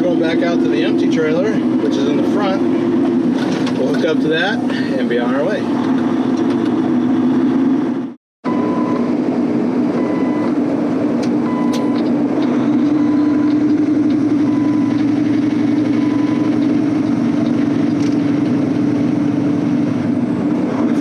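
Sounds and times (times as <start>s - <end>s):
diesel engine droning: 0.0s - 21.0s.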